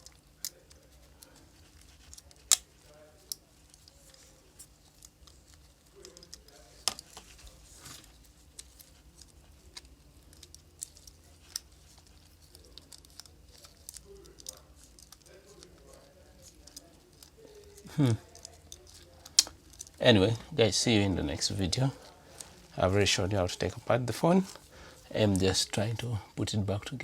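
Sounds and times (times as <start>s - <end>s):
small parts clicking: 0.0s - 7.2s, 8.2s - 20.0s.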